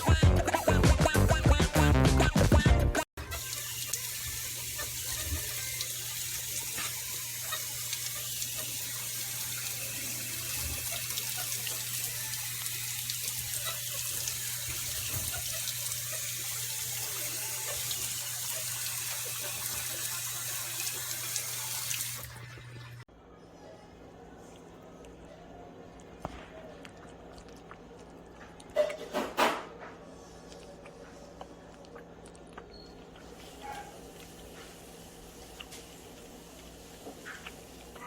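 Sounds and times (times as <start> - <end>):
music: 0.0 - 3.1
running water hiss: 3.3 - 22.4.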